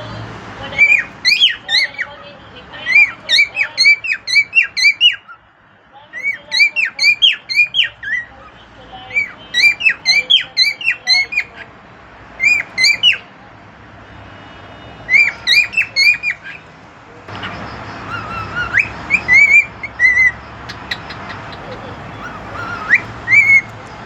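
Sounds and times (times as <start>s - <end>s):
cockatiel whistled chirps: 0.8s - 2.1s, 2.9s - 5.4s, 12.4s - 13.2s, 15.1s - 16.6s, 17.4s - 23.8s.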